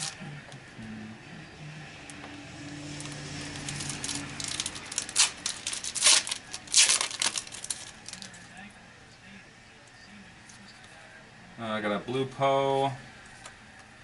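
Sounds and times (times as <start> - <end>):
foil wrapper crinkling and tearing: 2.9 - 8.5.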